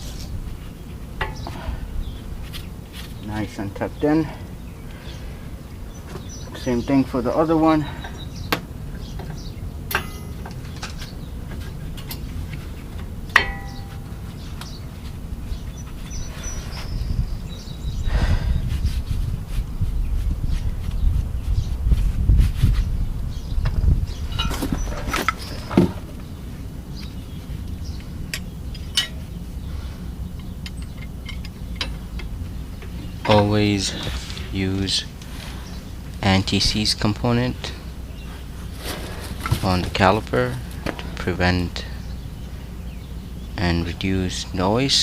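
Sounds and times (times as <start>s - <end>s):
metallic clicks and knocks of brake pads: 8.0s - 14.8s, 27.0s - 29.3s, 30.4s - 33.5s
metal clinks: 13.3s - 14.2s, 24.3s - 25.4s.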